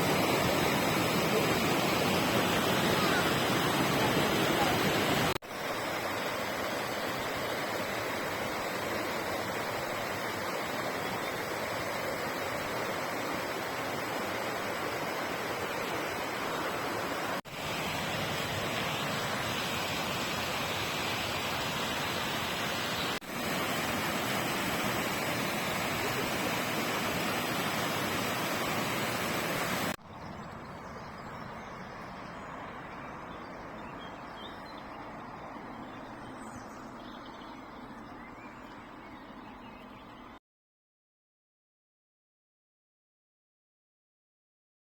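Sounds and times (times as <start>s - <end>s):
waterfall rushing: 0.0s - 30.0s.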